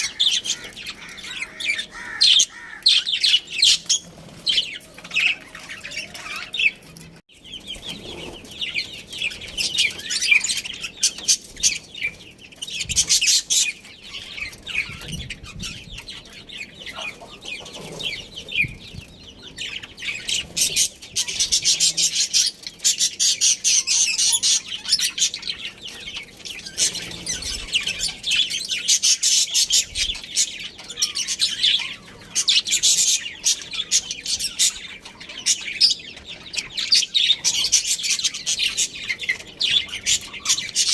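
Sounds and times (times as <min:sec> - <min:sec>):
budgerigars chirping: 0:00.0 - 0:40.9.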